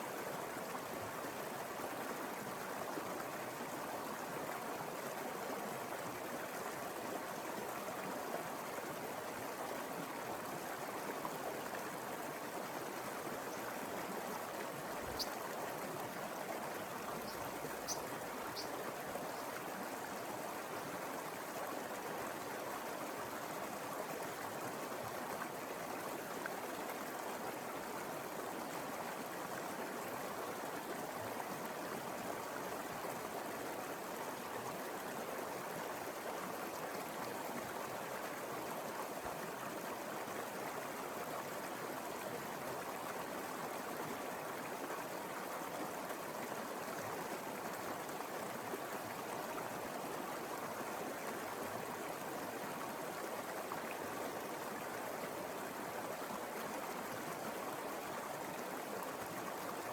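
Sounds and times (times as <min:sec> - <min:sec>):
river water rushing: 0:12.0 - 0:20.8.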